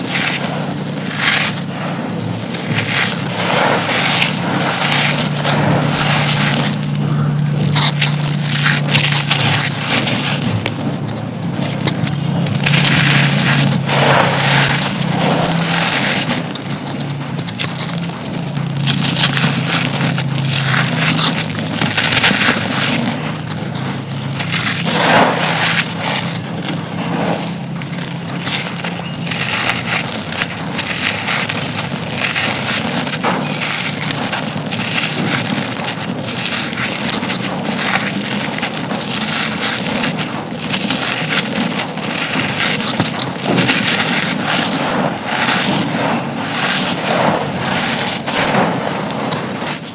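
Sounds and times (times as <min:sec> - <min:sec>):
concrete pieces crunching: 0:00.0 - 0:49.9.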